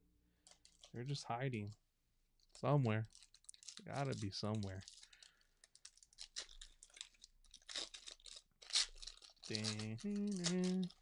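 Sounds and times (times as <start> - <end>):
foil wrapper tearing and crinkling: 2.4 - 11.0
person humming: 9.6 - 11.0.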